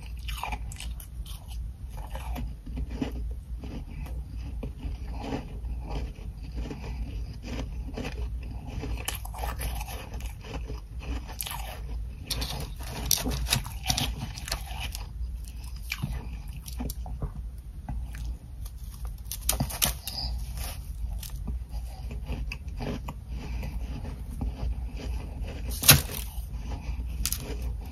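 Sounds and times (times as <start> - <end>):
crunching ice chunks: 12.3 - 15.0, 19.3 - 21.4, 25.6 - 26.4, 27.2 - 27.6.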